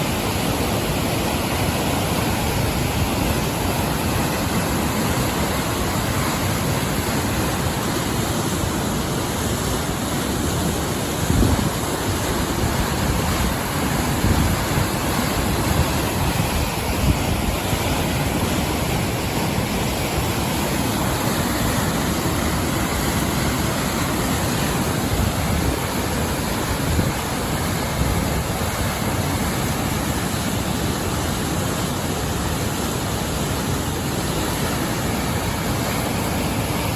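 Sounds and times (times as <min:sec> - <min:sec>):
waterfall rushing: 0:00.0 - 0:36.9
wind gusts on microphone: 0:00.0 - 0:36.9.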